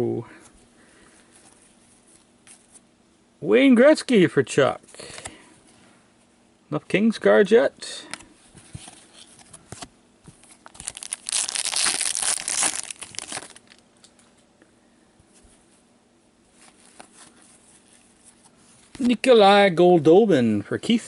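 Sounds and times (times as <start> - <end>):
wrapper tearing and crinkling: 10.6 - 13.8.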